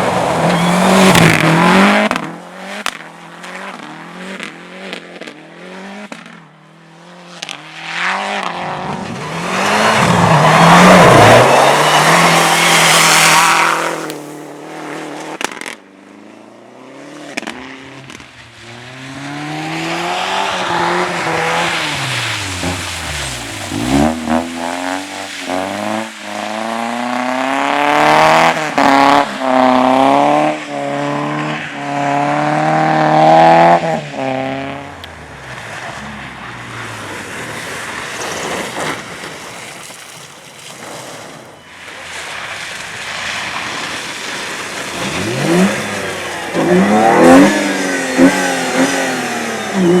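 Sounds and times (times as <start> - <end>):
race car passing by: 0.0 - 4.9, 7.3 - 15.4, 18.4 - 40.0, 41.3 - 50.0
engine revving up and down: 18.7 - 37.5, 44.8 - 50.0
race car engines running: 31.2 - 39.2, 41.8 - 50.0.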